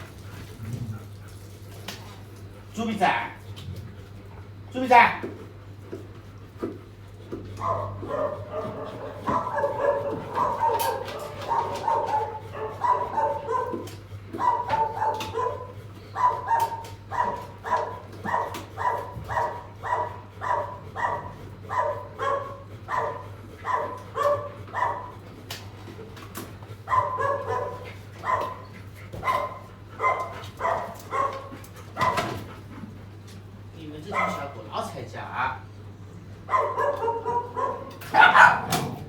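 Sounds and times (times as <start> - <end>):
dog barking: 7.6 - 25.2, 26.9 - 28.6, 29.2 - 32.4, 34.1 - 34.6, 36.4 - 39.0.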